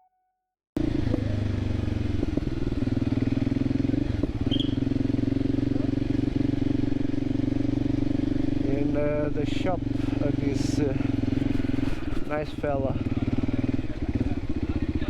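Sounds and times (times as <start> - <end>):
motorcycle engine running: 0.8 - 15.0.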